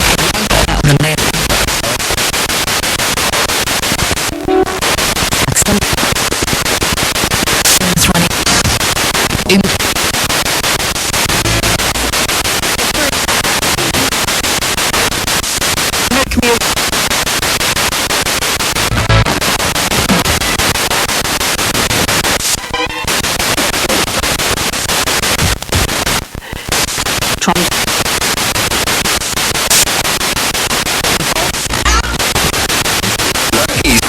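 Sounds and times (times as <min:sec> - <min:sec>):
broadcast voices: 0:00.0 - 0:04.3, 0:05.0 - 0:16.9, 0:18.6 - 0:21.2, 0:22.0 - 0:34.0
pulsing radio static: 0:00.0 - 0:34.0
broadcast music fragments: 0:11.1 - 0:14.2, 0:18.7 - 0:21.0, 0:31.1 - 0:34.0.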